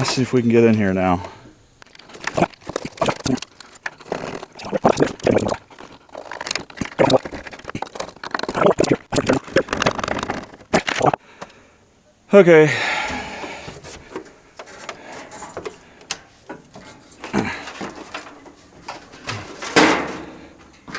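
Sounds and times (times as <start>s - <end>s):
metal clicks and scrapes: 12.8s - 20.9s.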